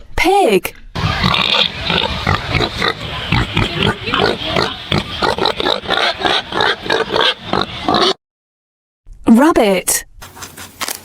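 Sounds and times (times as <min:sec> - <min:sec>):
pig grunting: 0:01.0 - 0:08.2.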